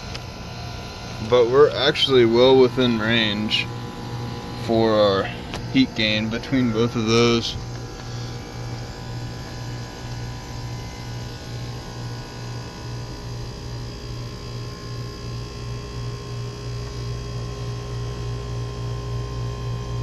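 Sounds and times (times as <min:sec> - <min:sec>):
deeper drone: 0:00.0 - 0:12.0
heat pump humming: 0:00.0 - 0:20.0.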